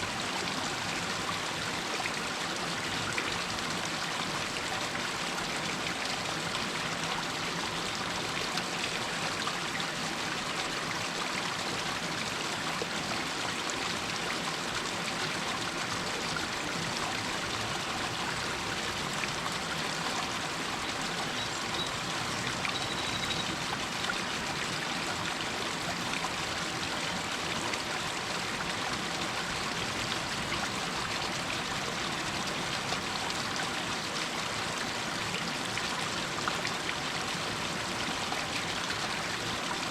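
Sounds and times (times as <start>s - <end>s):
water trickling over rocks: 0.0s - 39.9s
faint high tone: 22.7s - 23.6s.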